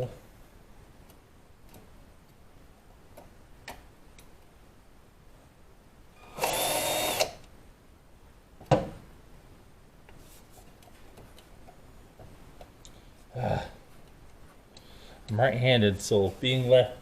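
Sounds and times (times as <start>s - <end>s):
power drill drilling: 6.2s - 7.4s.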